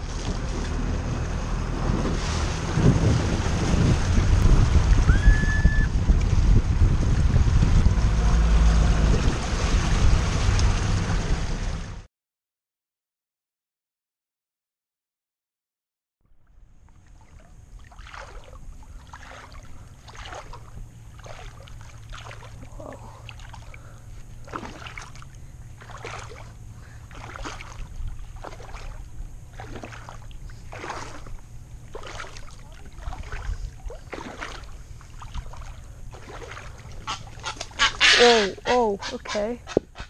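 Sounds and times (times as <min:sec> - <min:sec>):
water splashing against boat hull: 0:00.0 - 0:11.0, 0:16.8 - 0:40.0
low steady hum: 0:16.3 - 0:40.0.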